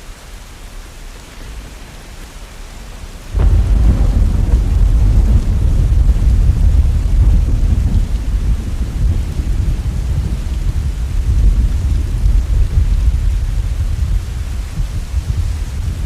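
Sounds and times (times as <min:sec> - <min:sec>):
steady rain: 0:00.0 - 0:16.0
deep rumble of thunder: 0:03.2 - 0:16.0.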